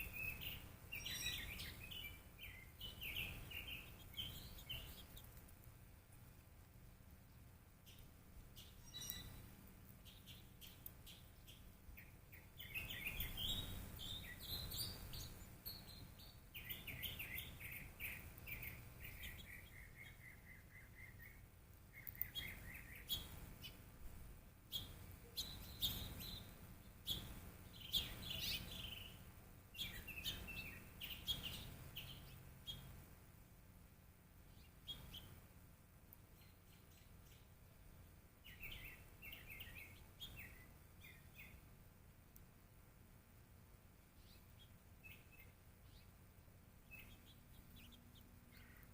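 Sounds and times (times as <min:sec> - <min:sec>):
descending bird notes: 0:00.0 - 0:05.3, 0:07.8 - 0:23.8, 0:46.8 - 0:48.9
small birds chirping: 0:00.0 - 0:48.9.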